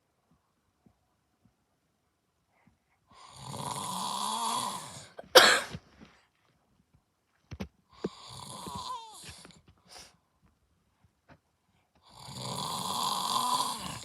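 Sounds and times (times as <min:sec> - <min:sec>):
man snoring: 0:03.2 - 0:05.2, 0:08.0 - 0:09.4, 0:12.0 - 0:14.0.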